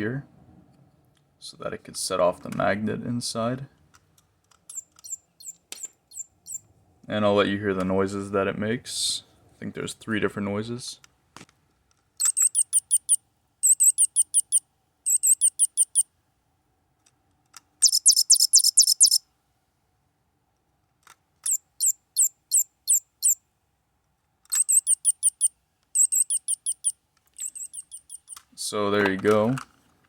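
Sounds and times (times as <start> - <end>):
toy bird electronic chirping: 4.7 - 6.6, 12.2 - 16.1, 17.8 - 19.2, 21.4 - 23.4, 24.5 - 28.4.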